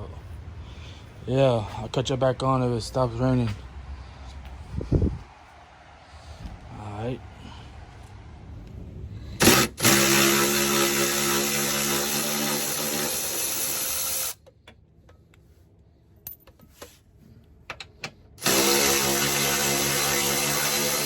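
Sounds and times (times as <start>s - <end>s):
power tool running: 9.4s - 14.4s, 18.4s - 21.0s.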